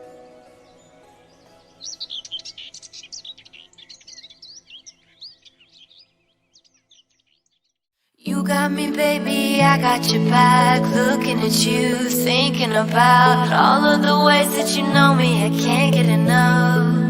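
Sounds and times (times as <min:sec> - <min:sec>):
soft background music: 0:00.0 - 0:04.3, 0:08.3 - 0:17.0
bird twittering: 0:00.6 - 0:07.8.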